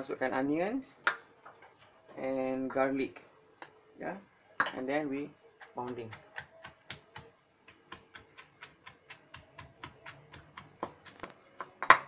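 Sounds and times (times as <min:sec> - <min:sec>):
stone pestle pounding in mortar: 0:05.6 - 0:12.0.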